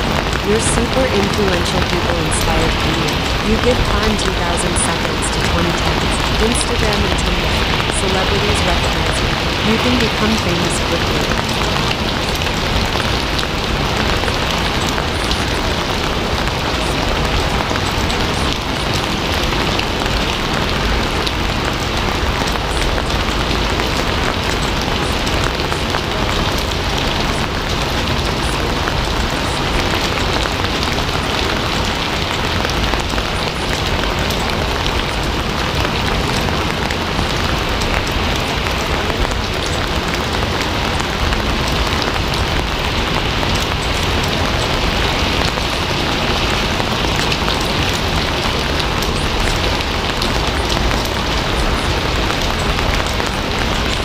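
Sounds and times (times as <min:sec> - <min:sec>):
steady rain patter: 0:00.0 - 0:54.0.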